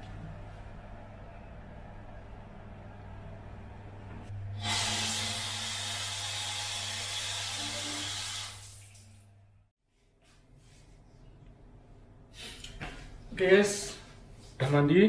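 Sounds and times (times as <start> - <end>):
steady low hum: 0.0 - 4.6.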